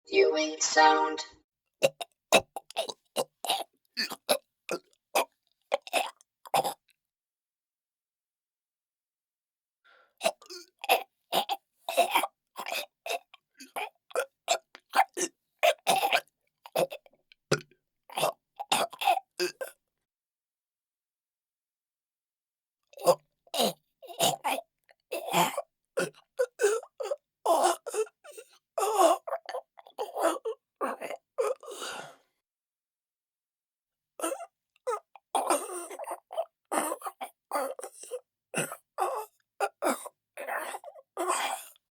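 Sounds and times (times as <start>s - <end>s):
man choking and gasping: 1.8s - 6.8s, 10.2s - 15.1s, 34.2s - 41.8s
gasps for air: 31.6s - 32.3s.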